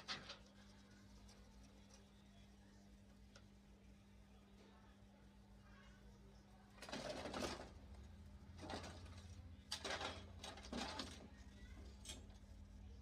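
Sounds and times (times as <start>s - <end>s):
printer parts knocking and rattling: 6.8s - 7.8s, 8.6s - 11.4s.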